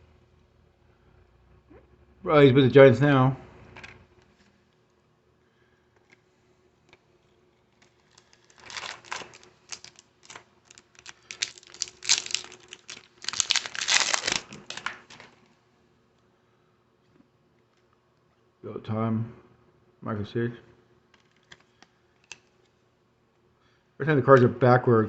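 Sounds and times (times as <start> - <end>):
foil wrapper crinkling and tearing: 7.7 - 15.4.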